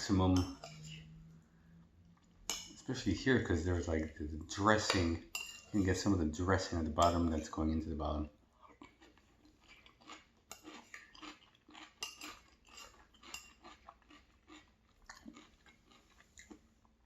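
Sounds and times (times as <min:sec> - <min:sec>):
cutlery clicking on dish: 0:02.5 - 0:02.8
chewing food with crunches: 0:08.6 - 0:17.0.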